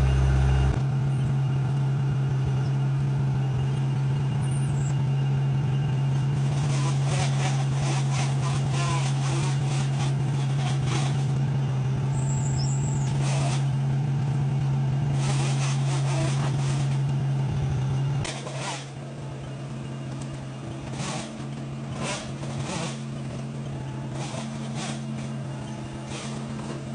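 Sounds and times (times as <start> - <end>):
heavy machinery engine running: 0.0 - 26.9
clattering and scraping: 6.2 - 11.4, 12.8 - 13.8, 15.1 - 17.2, 18.2 - 19.2, 20.1 - 26.9.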